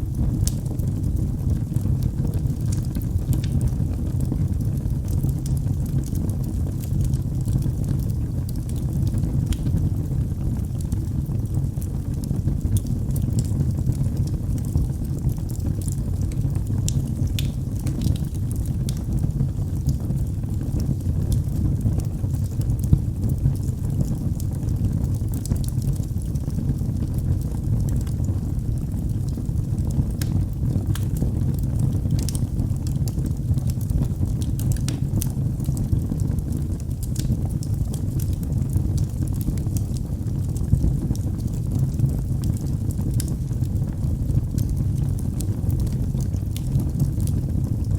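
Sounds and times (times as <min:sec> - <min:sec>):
low fire rumble: 0:00.0 - 0:47.9
wood fire crackling: 0:00.0 - 0:47.9.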